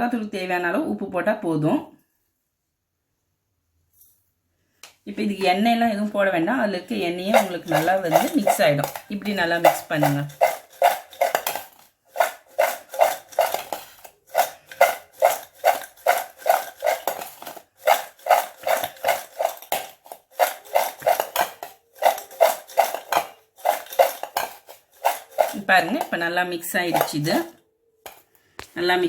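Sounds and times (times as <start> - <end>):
spoon scraping a bowl: 6.9 - 28.7.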